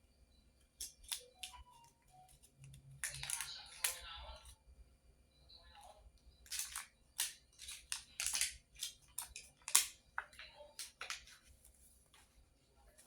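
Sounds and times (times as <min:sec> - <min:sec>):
packaging crinkling: 0:02.4 - 0:04.1, 0:06.5 - 0:11.7.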